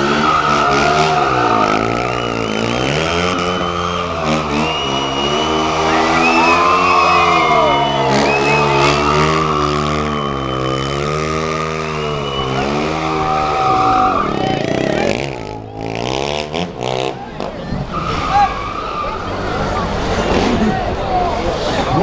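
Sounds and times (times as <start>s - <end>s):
tyre squeals: 0.0s - 11.2s, 11.8s - 15.7s
motorcycle engine revving: 0.0s - 17.6s.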